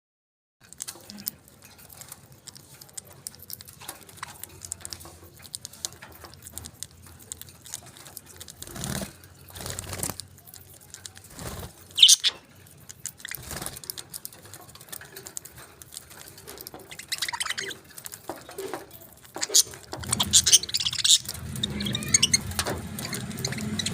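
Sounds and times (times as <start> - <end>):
small ticks and scratches: 0.6 - 23.9
parakeets chirping: 1.8 - 7.1, 11.3 - 23.9.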